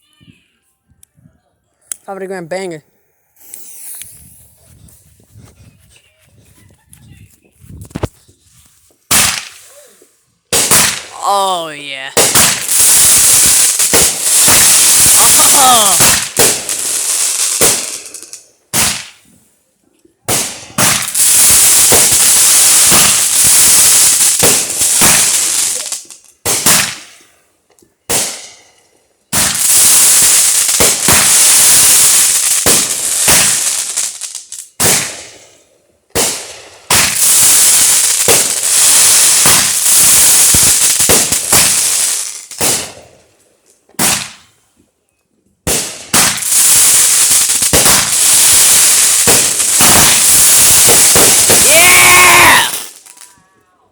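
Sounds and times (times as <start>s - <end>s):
loud firework crackling: 3.4s - 4.6s, 9.0s - 9.8s, 10.5s - 19.2s, 20.3s - 27.2s, 29.3s - 43.0s, 45.7s - 53.3s
firework launch shots: 9.1s - 9.7s, 10.5s - 11.2s, 12.2s - 19.3s, 20.3s - 27.3s, 28.1s - 28.7s, 29.3s - 34.1s, 34.7s - 43.1s, 44.0s - 44.5s, 45.6s - 53.2s.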